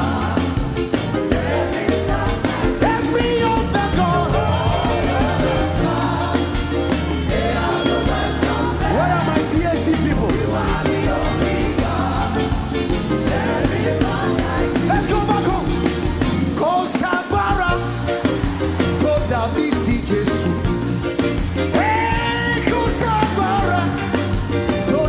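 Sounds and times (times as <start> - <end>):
voices singing together: 0.0 - 16.2
gospel band playing: 0.0 - 25.0.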